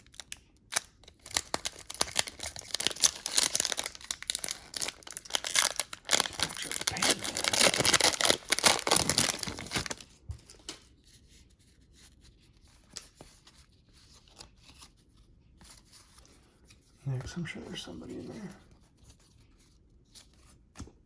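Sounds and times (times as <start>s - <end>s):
wrapper tearing and crinkling: 0.0s - 10.7s
cards rustling: 0.0s - 10.8s.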